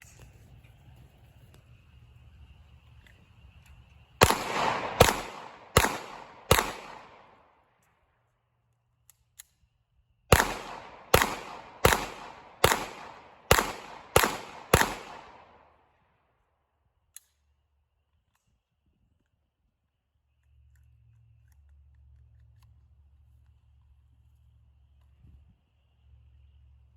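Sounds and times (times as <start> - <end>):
gunshots with echo: 4.2 - 7.4, 10.3 - 15.6.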